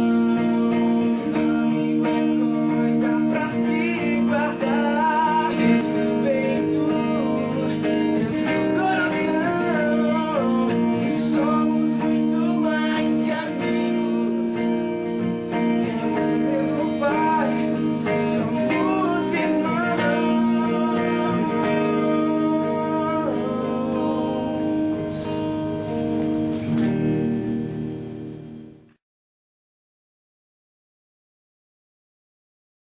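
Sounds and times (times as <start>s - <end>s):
person singing: 0.0s - 26.6s
guitar chords strummed: 0.0s - 29.0s.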